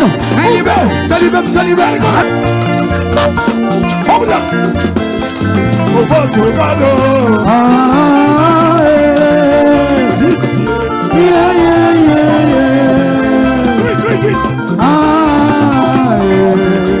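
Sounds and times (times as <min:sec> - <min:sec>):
low bass line: 0:02.0 - 0:16.5.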